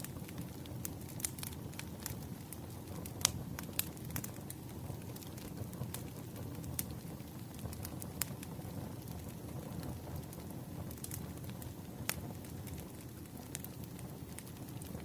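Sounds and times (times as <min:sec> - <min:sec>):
wood fire crackling and popping: 0:00.0 - 0:15.0.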